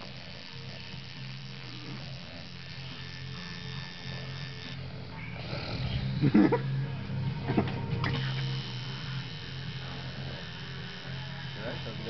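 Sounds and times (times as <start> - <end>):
tattoo machine buzzing: 0.0 - 12.0
person snoring: 5.1 - 6.8.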